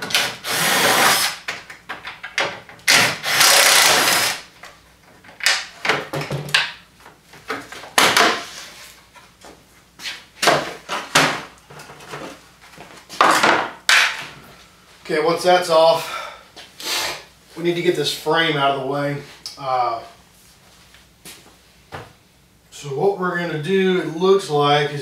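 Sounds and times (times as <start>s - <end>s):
clicks and rattles of parts: 1.5s - 3.9s
power driver running: 2.8s - 4.5s.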